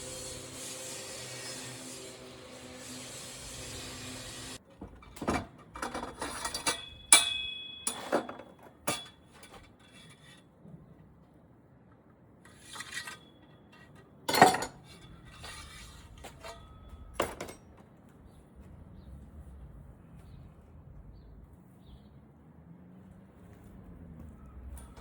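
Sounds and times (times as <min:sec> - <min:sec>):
metal kitchenware clinking: 0:05.2 - 0:10.0, 0:12.8 - 0:17.6.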